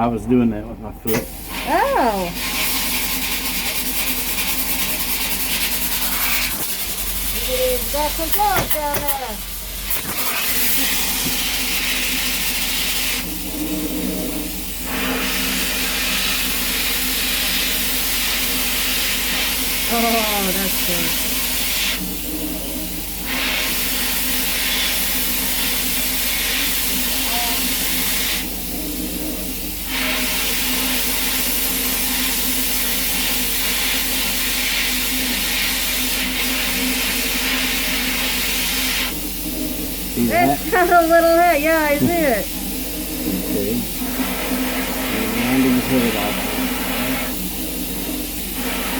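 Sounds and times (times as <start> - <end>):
sandblaster hissing: 1.1 - 13.4, 14.4 - 22.2, 23.2 - 28.5, 29.8 - 39.4, 40.0 - 48.9
sandblaster blasting onto glass: 2.4 - 13.4, 29.9 - 39.2
steady low hum: 39.2 - 44.1.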